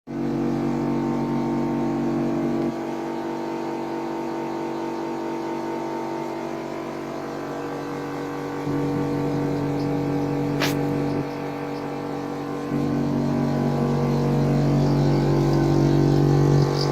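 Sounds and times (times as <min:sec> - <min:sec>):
compressor humming: 0:00.1 - 0:16.9
sharp click: 0:10.5 - 0:11.3.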